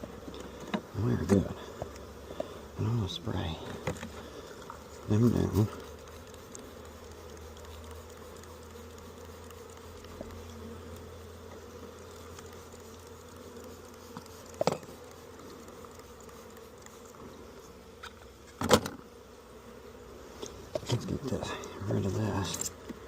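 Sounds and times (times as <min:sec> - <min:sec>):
bees buzzing: 0:00.0 - 0:23.0.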